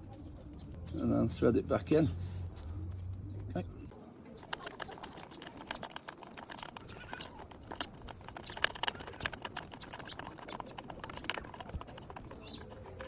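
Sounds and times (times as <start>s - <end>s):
metallic clicking of hand tools: 4.4s - 13.0s.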